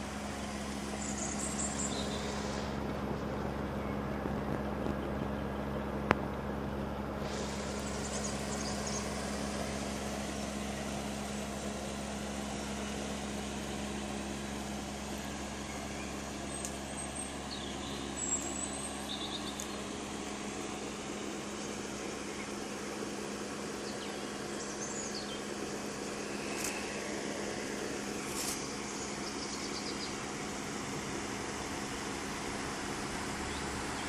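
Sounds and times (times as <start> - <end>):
fan noise: 0.0 - 34.0
heat pump humming: 0.0 - 34.0.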